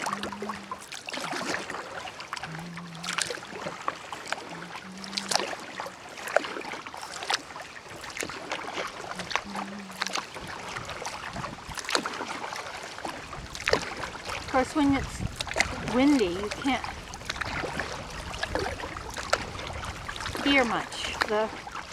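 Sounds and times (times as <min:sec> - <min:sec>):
paddle splashing water: 0:00.0 - 0:21.9
wind noise: 0:10.4 - 0:11.9, 0:13.1 - 0:21.9.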